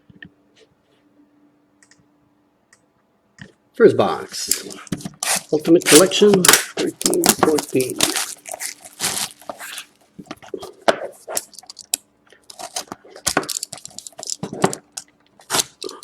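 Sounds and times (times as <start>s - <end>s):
plastic wrap crinkling and tearing: 4.5s - 16.0s.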